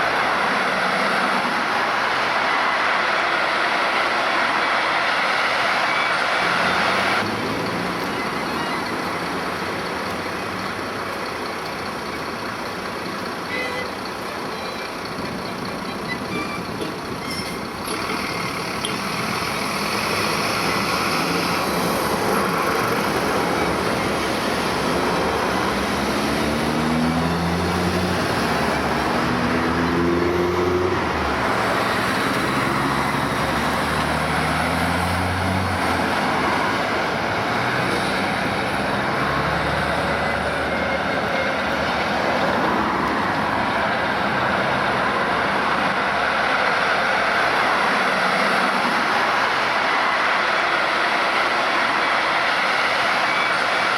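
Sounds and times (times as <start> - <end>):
road traffic noise: 0.0 - 53.9
heavy vehicle engine revving: 15.7 - 53.9.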